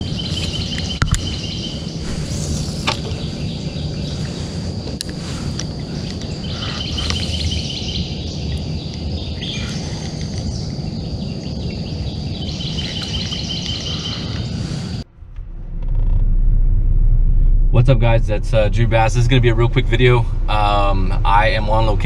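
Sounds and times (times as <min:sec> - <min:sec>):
songbirds chirping: 0:00.0 - 0:15.0
wind buffeting microphone: 0:00.0 - 0:22.0.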